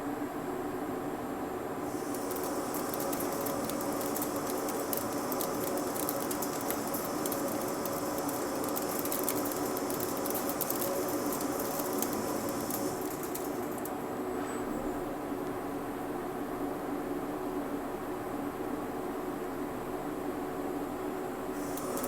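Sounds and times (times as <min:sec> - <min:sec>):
crackle of metal cutting: 0:01.8 - 0:14.0, 0:21.5 - 0:22.0
lathe machine hum: 0:01.8 - 0:14.1, 0:21.5 - 0:22.0.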